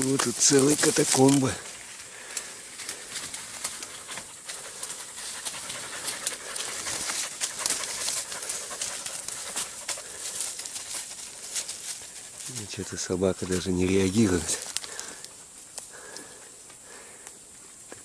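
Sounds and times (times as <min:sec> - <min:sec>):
undergrowth rustling: 0:00.0 - 0:18.0
dog panting: 0:03.8 - 0:10.6.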